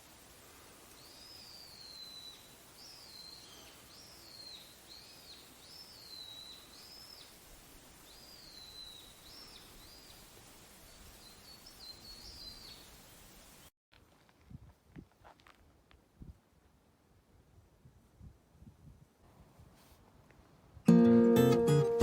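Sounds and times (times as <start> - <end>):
songbird singing faintly: 0.0 - 13.7
quiet outdoor background noise: 0.0 - 22.0.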